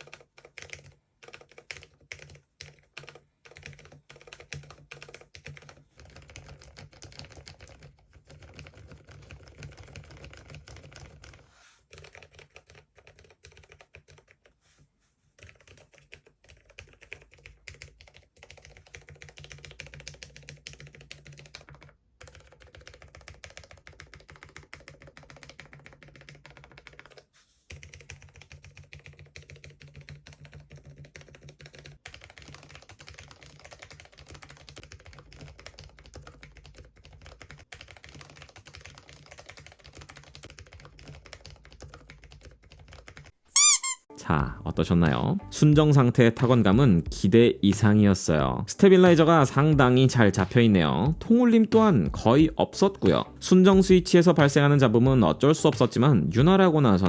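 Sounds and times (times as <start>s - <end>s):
mechanical keyboard typing: 0.0s - 14.5s, 15.4s - 43.3s.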